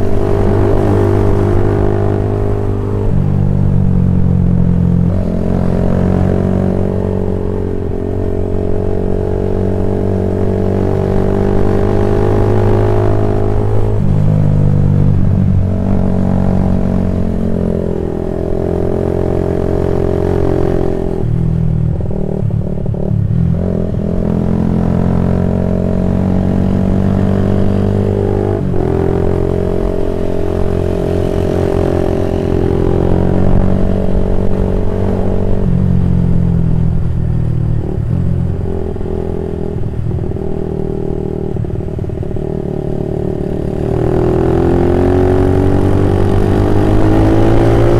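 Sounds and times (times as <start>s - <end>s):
motorcycle engine revving: 0.0s - 47.9s.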